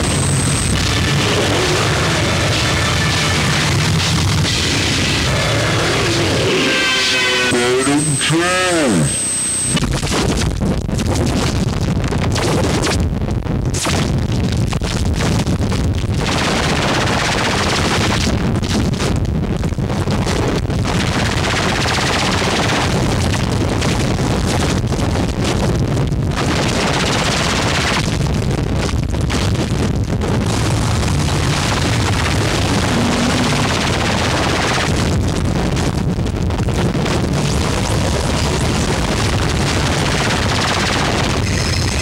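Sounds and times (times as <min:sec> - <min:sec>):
harsh rumbling hissing noise: 0:00.0 - 0:09.9.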